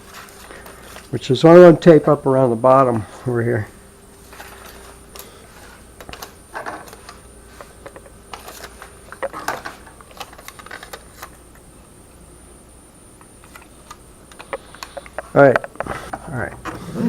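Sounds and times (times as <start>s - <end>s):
tape crinkling: 4.2s - 11.6s.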